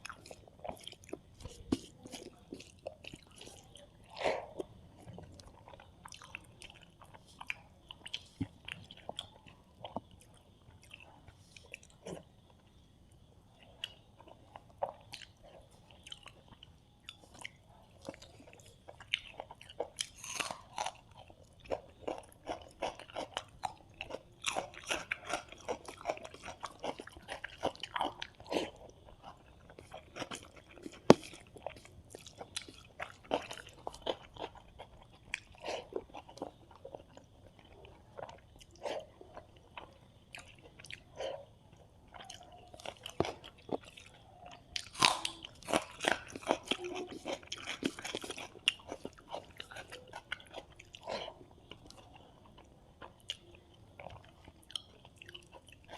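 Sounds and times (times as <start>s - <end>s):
person chewing and crunching: 0.0s - 55.9s
small eating clicks: 0.0s - 55.9s.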